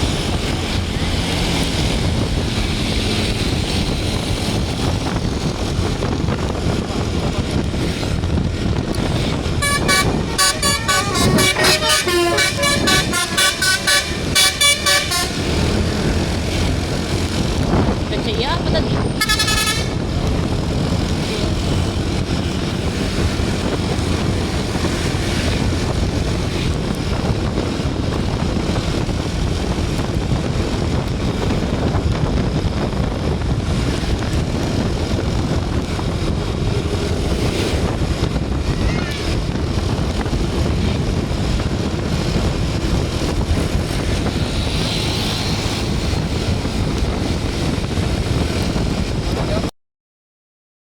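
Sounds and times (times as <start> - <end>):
vehicle engine and road rumble: 0.0 - 49.7
brief high tone: 9.6 - 15.3.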